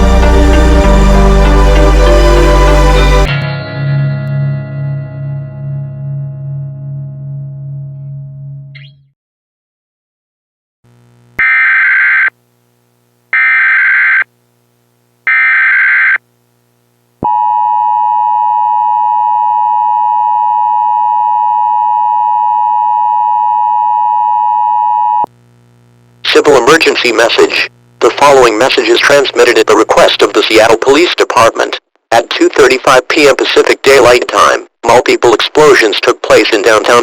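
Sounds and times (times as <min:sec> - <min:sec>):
digital data bursts: 0:11.4 - 0:12.3, 0:13.4 - 0:14.3, 0:15.3 - 0:16.2.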